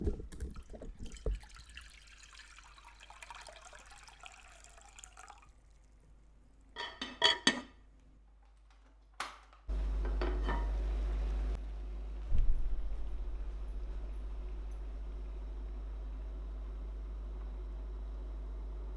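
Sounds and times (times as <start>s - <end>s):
dishware clinking: 6.8s - 7.8s, 10.2s - 10.8s
steady low hum: 9.7s - 18.9s.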